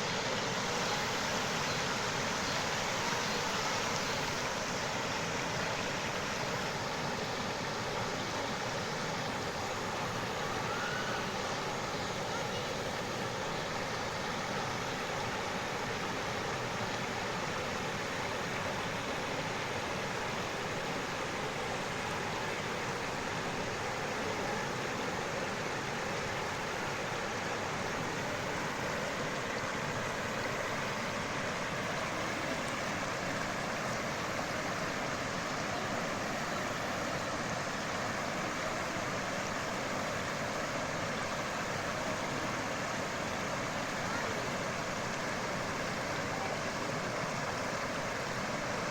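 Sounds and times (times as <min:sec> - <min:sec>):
stream water flowing: 0:00.0 - 0:48.9.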